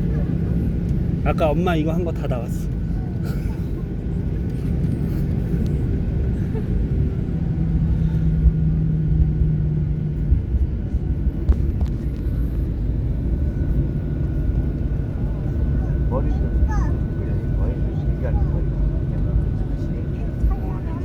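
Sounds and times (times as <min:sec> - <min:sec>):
engine and airflow rumble: 0:00.0 - 0:21.0.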